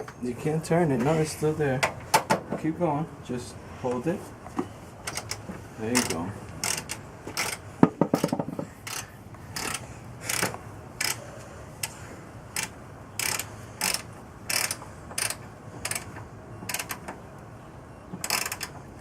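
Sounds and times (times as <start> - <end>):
ratchet wrench clicking: 6.0 - 7.6, 8.8 - 11.2, 12.6 - 16.1, 16.7 - 17.0, 18.2 - 18.7.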